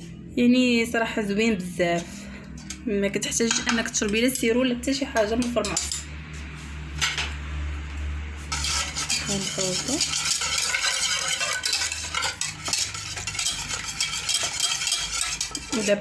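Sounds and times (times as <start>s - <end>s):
spoon scraping a saucepan: 8.4s - 16.0s.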